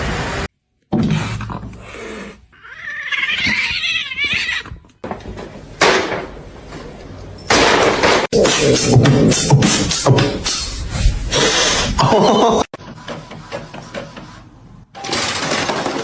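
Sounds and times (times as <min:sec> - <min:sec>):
cat meowing: 0:02.6 - 0:04.8.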